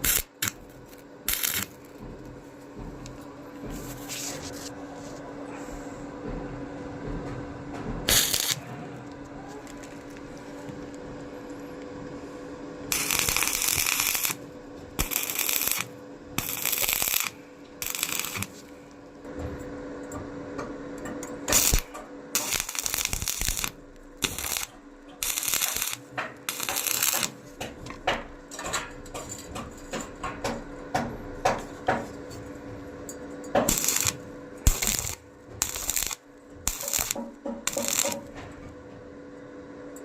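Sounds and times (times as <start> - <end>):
welding arc crackling: 0.0 - 2.0, 8.1 - 8.6, 9.6 - 10.6, 12.8 - 18.8, 21.4 - 29.3, 33.6 - 38.4
steady machine hum: 0.0 - 40.0.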